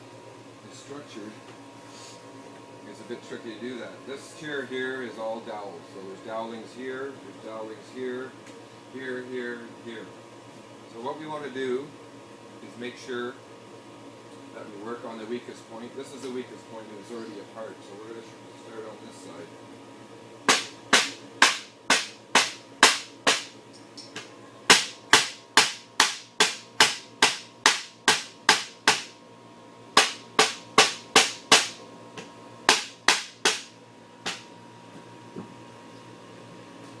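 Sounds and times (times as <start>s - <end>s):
hammer striking wooden chair: 20.5s - 23.5s, 24.7s - 29.1s, 30.0s - 31.8s, 32.7s - 33.7s.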